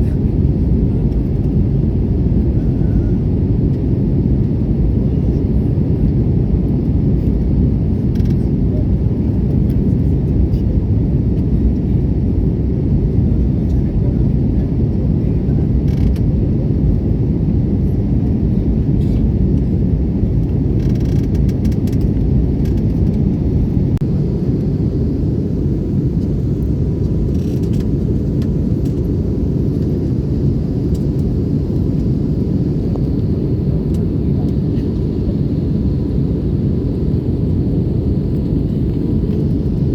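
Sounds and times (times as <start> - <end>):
jet engine rumble: 0.0 - 39.9.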